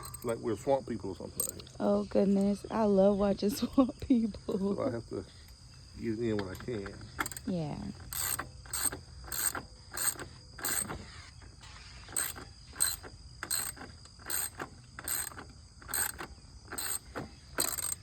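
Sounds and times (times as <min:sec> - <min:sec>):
high insect drone: 0:00.0 - 0:18.0
ratchet wrench clicking: 0:06.6 - 0:11.3, 0:12.0 - 0:18.0.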